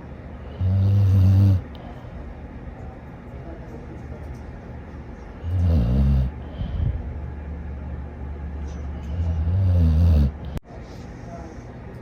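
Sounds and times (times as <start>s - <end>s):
dog snoring: 0.5s - 1.7s, 5.4s - 6.5s, 9.0s - 10.6s.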